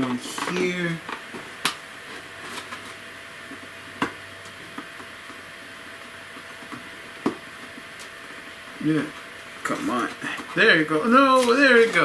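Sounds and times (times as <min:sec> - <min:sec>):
box handling noises: 0:00.0 - 0:05.4
faint steady hum: 0:00.0 - 0:12.0.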